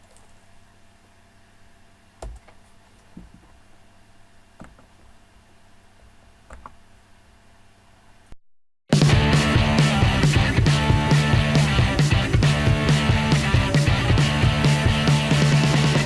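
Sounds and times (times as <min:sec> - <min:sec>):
low room hum: 0:00.0 - 0:08.4.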